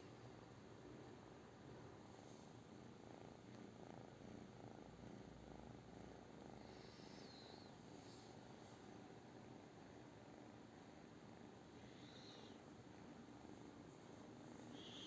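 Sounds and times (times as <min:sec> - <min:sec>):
cat purring softly: 0:00.0 - 0:15.0.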